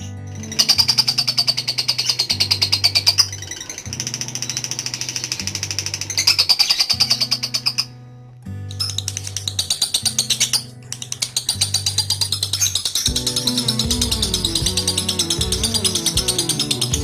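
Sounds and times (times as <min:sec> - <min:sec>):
lovebird chattering trill: 0:00.4 - 0:07.9, 0:08.8 - 0:17.0
background music with bass line: 0:13.1 - 0:17.0.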